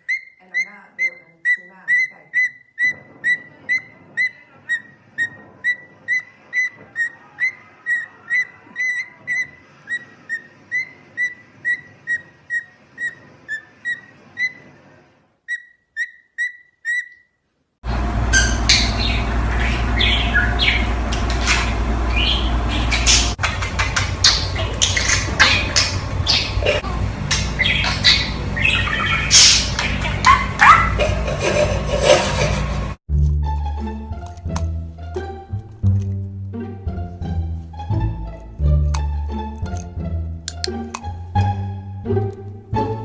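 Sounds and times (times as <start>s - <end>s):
bird squawks and calls: 0.0s - 14.6s, 15.5s - 17.3s, 18.4s - 31.1s
parrot whistling high note: 0.0s - 14.6s
steady low hum: 17.8s - 33.0s.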